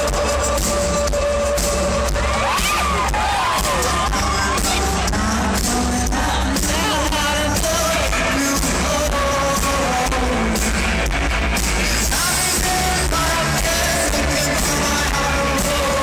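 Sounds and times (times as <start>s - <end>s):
live rock band playing: 0.0s - 16.0s
man singing: 0.0s - 16.0s.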